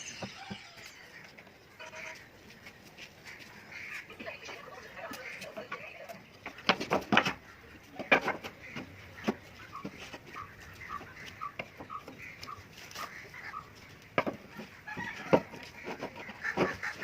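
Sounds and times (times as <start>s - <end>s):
sharp knocks and clicks: 14.2s - 14.6s.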